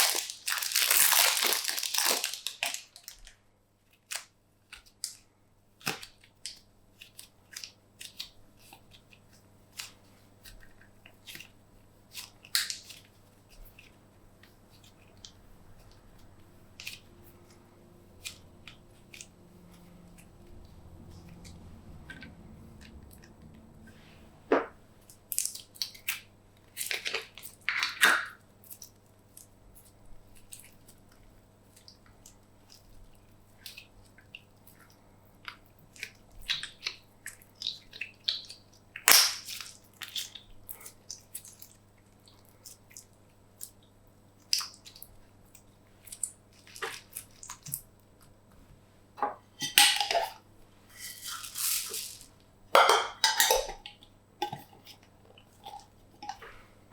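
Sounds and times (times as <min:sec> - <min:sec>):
slime being squished by hand: 0:00.0 - 0:03.2.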